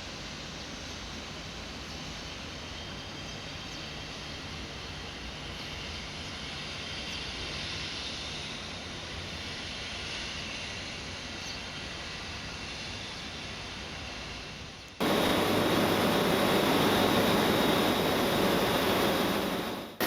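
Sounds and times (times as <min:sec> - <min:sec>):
machinery hiss: 0:15.0 - 0:20.0.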